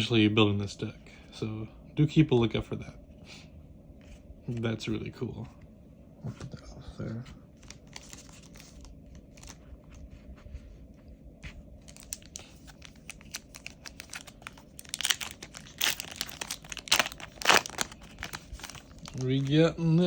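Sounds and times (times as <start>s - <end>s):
foil wrapper crinkling: 7.6s - 9.6s, 11.8s - 19.7s.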